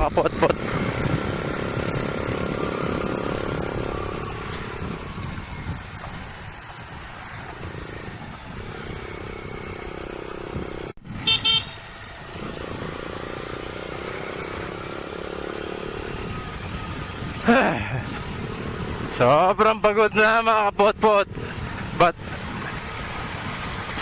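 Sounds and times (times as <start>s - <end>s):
motorcycle engine and road noise: 0.0s - 24.0s
vehicle horn toots: 11.2s - 11.9s.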